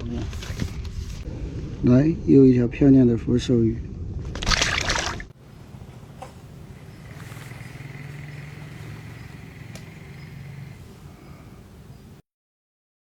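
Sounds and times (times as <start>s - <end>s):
motor engine humming: 6.2s - 12.0s.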